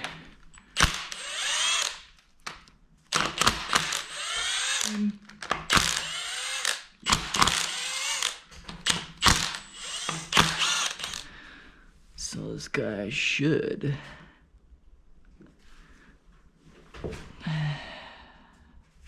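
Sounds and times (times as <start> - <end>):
power tool whining in bursts: 0.8 - 2.1, 3.2 - 5.0, 5.7 - 11.2.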